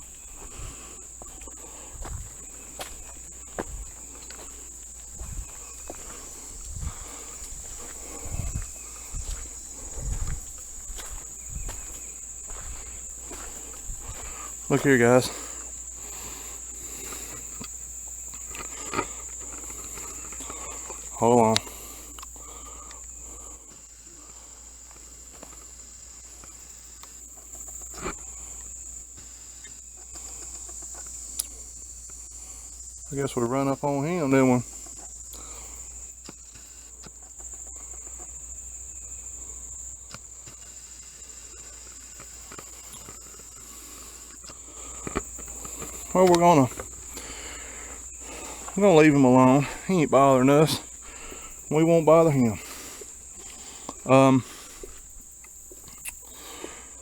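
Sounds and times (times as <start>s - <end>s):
faint ticks: 0.0s - 50.0s, 50.6s - 57.0s
footsteps on woodland trail: 0.0s - 57.0s
high-pitched insect drone: 0.0s - 57.0s
twigs snapping: 44.3s - 48.8s.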